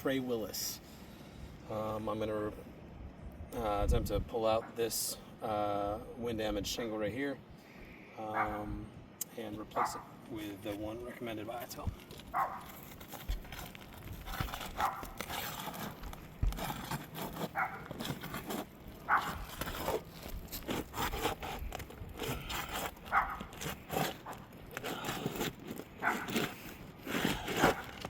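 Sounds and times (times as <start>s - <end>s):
roof shingle scraping and tearing: 9.8s - 28.0s.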